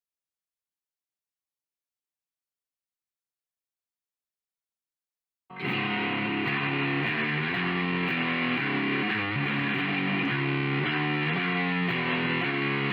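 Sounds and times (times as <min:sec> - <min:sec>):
distorted electric guitar riff: 0:05.5 - 0:12.9.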